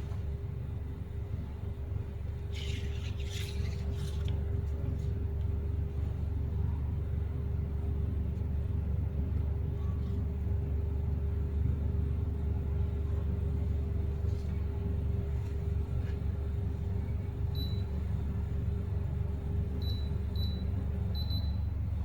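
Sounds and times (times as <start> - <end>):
humidifier humming: 10.3 - 22.0.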